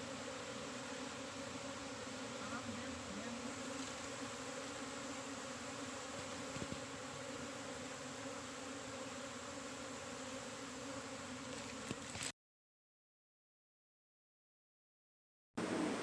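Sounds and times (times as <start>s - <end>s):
bee swarm buzzing: 0.0s - 12.3s, 15.6s - 16.0s.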